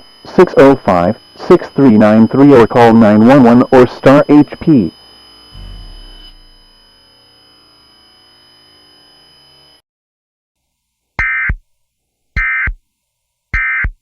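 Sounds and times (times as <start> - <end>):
digital data tone bursts: 0.3 - 5.0, 5.6 - 7.2.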